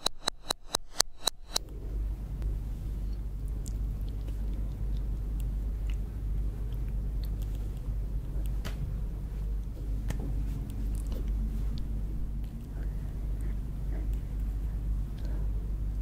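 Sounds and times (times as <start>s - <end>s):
steady low rumble: 0.0s - 16.0s.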